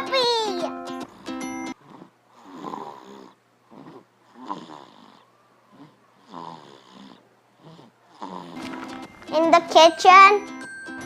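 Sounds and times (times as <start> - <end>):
person snoring: 1.8 - 8.7.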